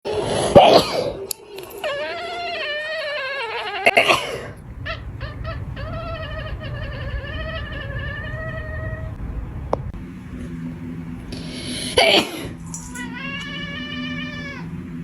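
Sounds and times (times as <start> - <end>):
cat yowling: 1.8 - 9.2, 12.9 - 14.8.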